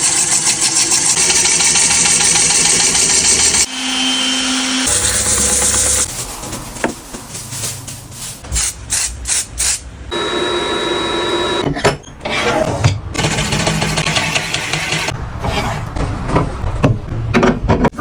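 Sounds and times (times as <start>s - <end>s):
wood lathe hum: 0.0s - 6.1s.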